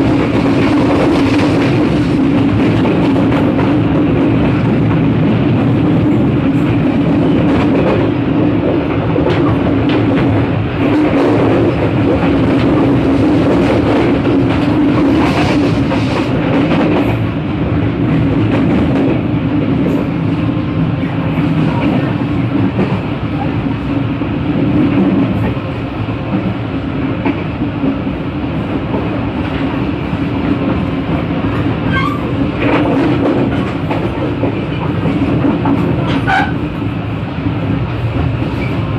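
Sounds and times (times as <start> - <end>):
train wheels rumbling on rails: 0.0 - 38.9
wheels clacking on rail joints: 30.4 - 36.9.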